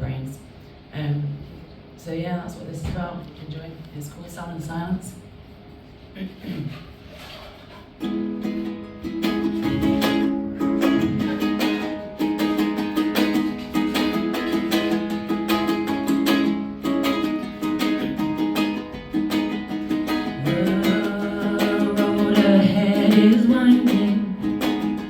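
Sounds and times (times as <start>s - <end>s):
ukulele strumming: 7.9s - 25.0s.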